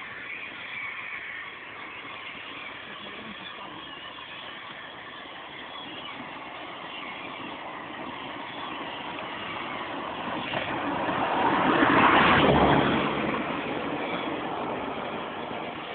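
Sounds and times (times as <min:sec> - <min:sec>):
motor vehicle passing by: 0:08.1 - 0:15.9.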